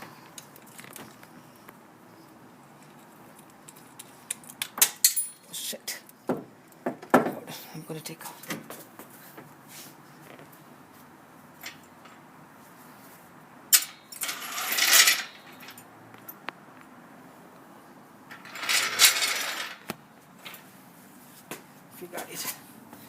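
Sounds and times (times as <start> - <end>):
metal tools clinking: 2.7 - 5.6, 13.7 - 16.4, 18.3 - 19.8.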